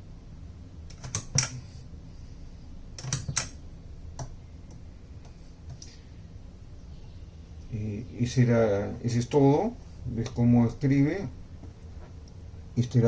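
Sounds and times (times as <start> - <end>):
typewriter keys clacking: 0.9 - 1.6.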